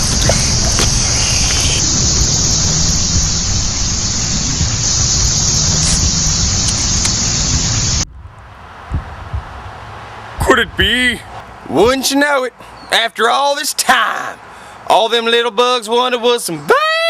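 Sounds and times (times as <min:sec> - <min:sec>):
low rumble: 0:00.0 - 0:12.0
cicadas buzzing: 0:00.0 - 0:13.0.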